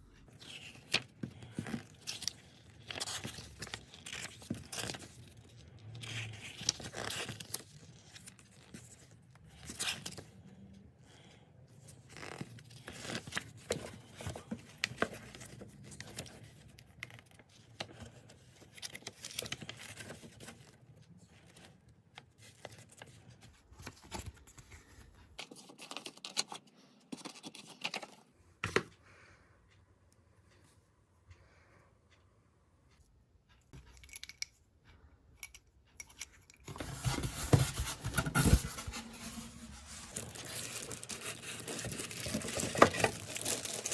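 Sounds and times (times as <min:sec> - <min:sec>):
packaging crinkling and tearing: 0:36.7 - 0:43.9.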